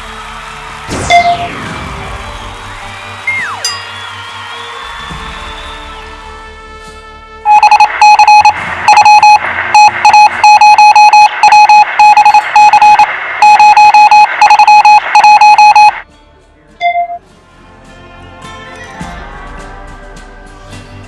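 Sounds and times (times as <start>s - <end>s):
alarm clock beeping: 7.5s - 16.0s, 16.8s - 17.2s.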